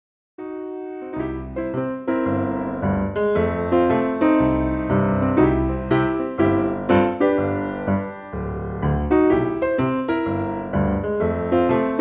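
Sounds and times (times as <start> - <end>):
piano music with bass line: 0.4 - 12.0.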